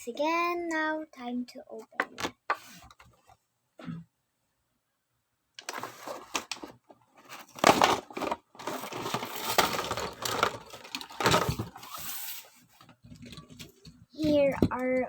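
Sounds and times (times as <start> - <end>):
plastic blister pack crinkling: 5.6 - 12.4
cardboard tearing: 5.6 - 12.5.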